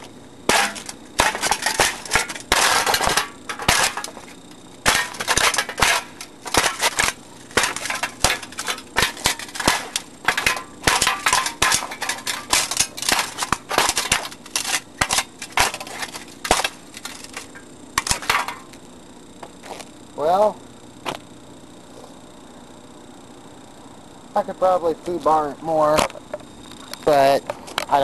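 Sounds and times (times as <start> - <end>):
crowbar hitting fan: 0.5 - 4.2
plastic and metal parts clattering: 0.5 - 4.3, 4.9 - 18.7.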